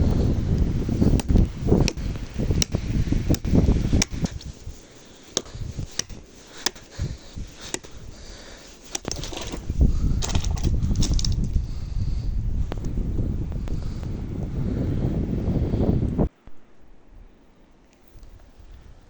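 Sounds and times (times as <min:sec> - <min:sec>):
chopping blows on wood: 0:01.0 - 0:04.5.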